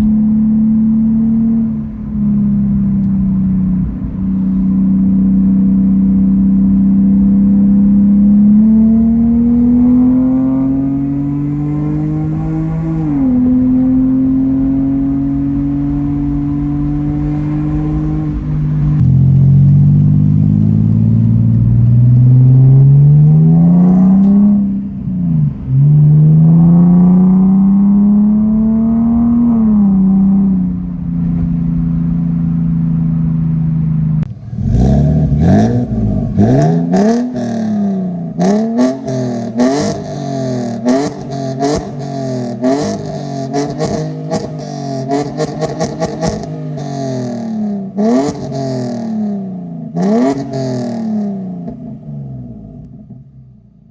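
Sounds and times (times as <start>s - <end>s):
car exhaust revving: 0.0s - 53.9s
exhaust cracks: 15.6s - 25.7s, 29.6s - 53.4s.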